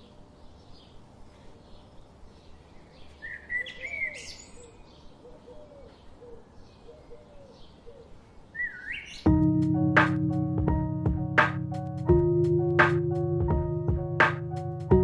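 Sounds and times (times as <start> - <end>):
faint lower bird calls: 0.0 - 9.3
loud keyboard music: 9.3 - 15.0.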